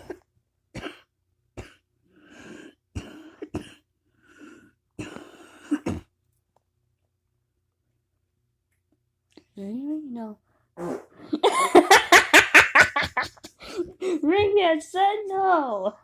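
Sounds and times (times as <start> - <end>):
harsh hacking coughs: 0.7 - 1.9, 2.9 - 3.9, 5.0 - 6.1.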